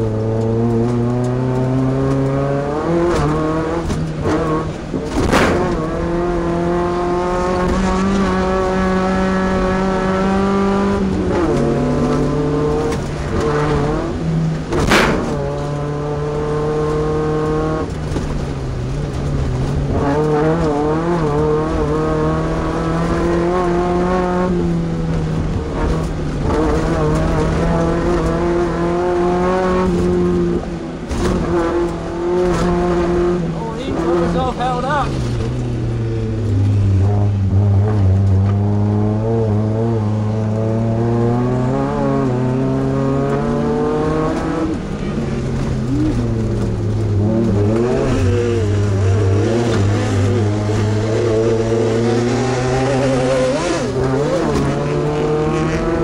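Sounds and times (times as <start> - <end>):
loud thumps: 3.8 - 6.0, 14.6 - 15.8.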